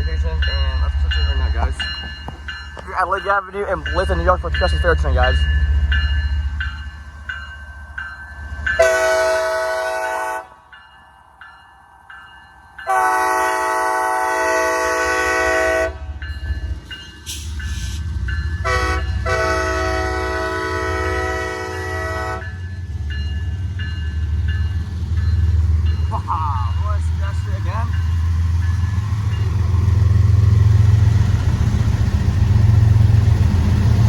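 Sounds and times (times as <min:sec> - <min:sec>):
locomotive rumble: 0:00.0 - 0:10.2, 0:13.0 - 0:34.0
crossing bells ringing: 0:00.0 - 0:30.8
locomotive air horn: 0:08.8 - 0:10.5, 0:12.9 - 0:16.0, 0:18.6 - 0:22.4.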